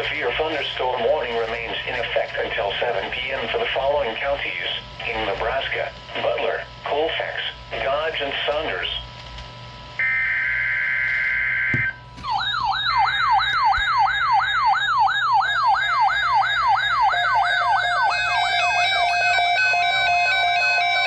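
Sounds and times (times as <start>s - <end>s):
alternating electronic beeps: 10.0s - 21.0s
warbling electronic alert tone: 11.4s - 21.0s.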